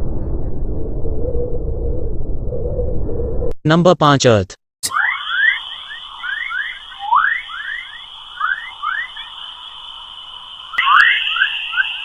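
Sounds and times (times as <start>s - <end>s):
steady high tone: 4.8s - 12.0s
short rising chirps: 4.9s - 12.0s.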